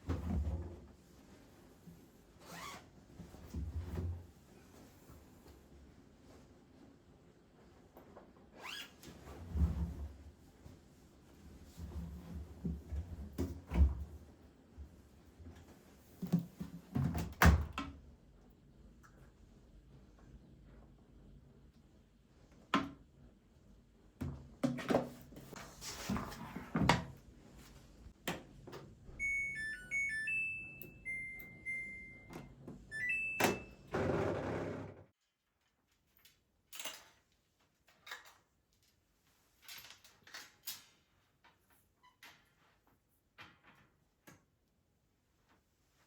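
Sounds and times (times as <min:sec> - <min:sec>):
appliance electronic beeps: 0:29.2 - 0:34.0.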